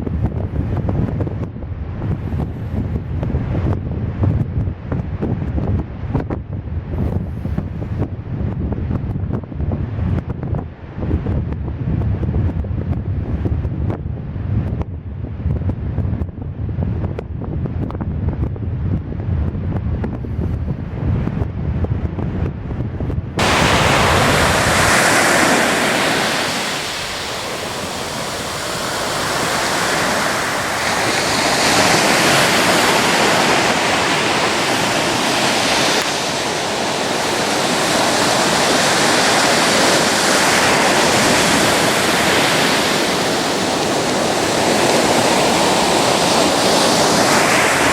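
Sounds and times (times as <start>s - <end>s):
wind on microphone: 0.0s - 47.9s
ocean waves breaking: 23.4s - 47.9s.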